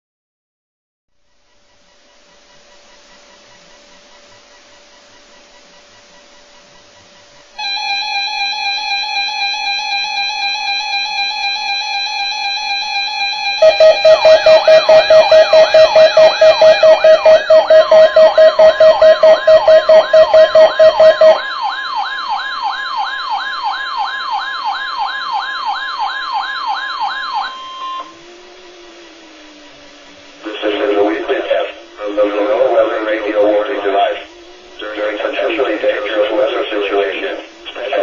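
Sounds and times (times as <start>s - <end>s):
electronic siren warble: 7.6s - 38.0s
pulsing alert tone: 13.6s - 21.5s
steady chord of tones: 13.6s - 21.6s, 27.7s - 38.0s.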